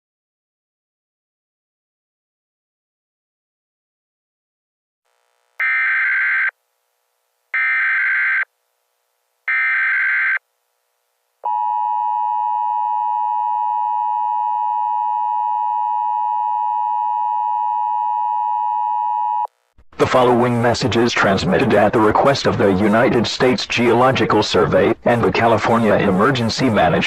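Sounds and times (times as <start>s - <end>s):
buzzy digital header bursts: 5.2s - 6.5s.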